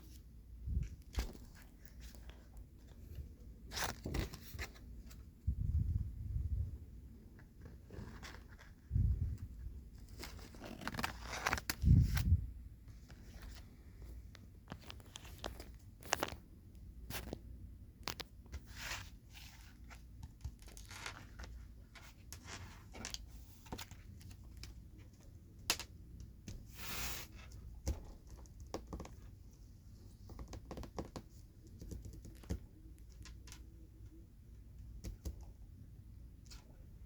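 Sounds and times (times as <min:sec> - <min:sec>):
cards rustling and scraping: 0:00.8 - 0:05.3, 0:07.6 - 0:12.4, 0:14.7 - 0:16.4, 0:18.0 - 0:25.1, 0:25.7 - 0:29.3
cards tapping and clicking: 0:27.8 - 0:29.3, 0:30.2 - 0:33.6.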